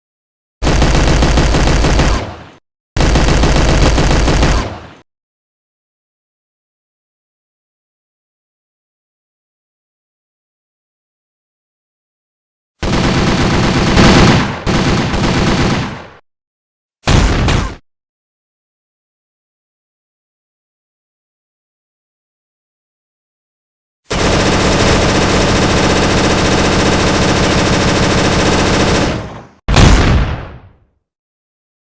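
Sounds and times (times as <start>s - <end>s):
machine-gun fire: 0.6s - 5.0s, 12.8s - 16.2s, 24.1s - 30.8s.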